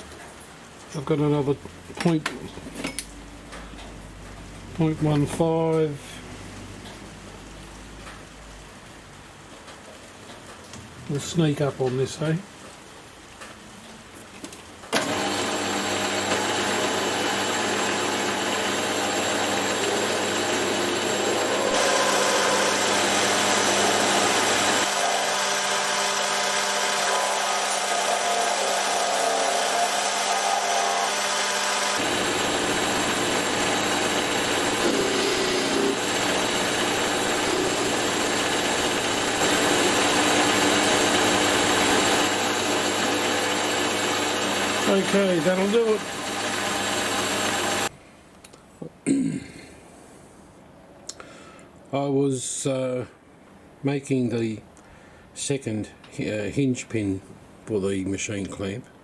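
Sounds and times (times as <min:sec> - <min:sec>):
lathe cutting hiss: 0:15.0 - 0:47.9
lathe motor and belt hum: 0:15.0 - 0:47.9.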